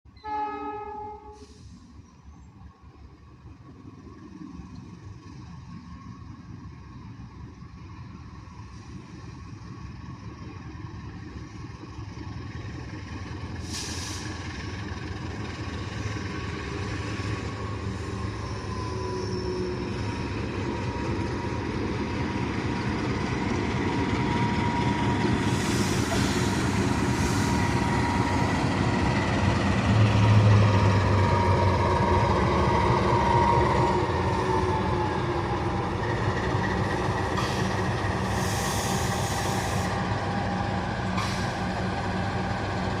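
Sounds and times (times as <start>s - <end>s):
diesel locomotive approaching: 0.1s - 43.0s.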